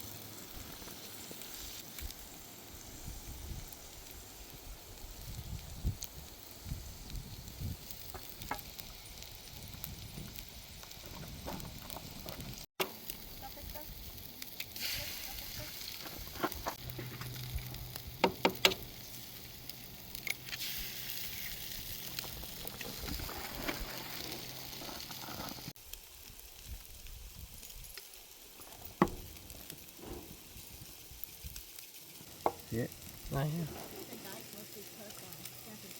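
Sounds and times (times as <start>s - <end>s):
food sizzling in a pan: 0.0s - 35.9s
sharp clicks and knocks: 18.2s - 18.9s.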